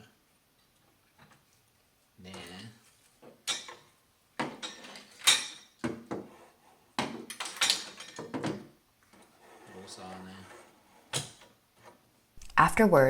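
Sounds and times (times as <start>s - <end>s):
curtain track parts clacking: 3.4s - 6.3s, 7.0s - 11.5s.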